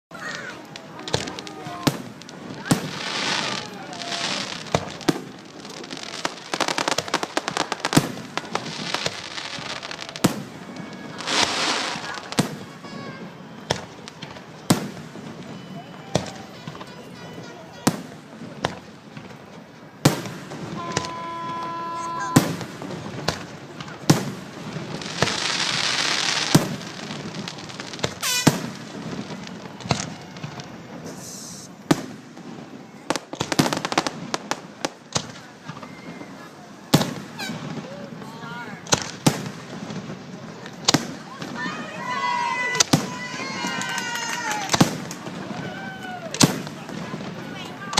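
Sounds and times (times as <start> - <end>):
rapid crackling pops: 0.1 - 15.6, 38.8 - 47.9
fireworks booming: 0.1 - 47.9
fireworks hissing: 0.1 - 47.9.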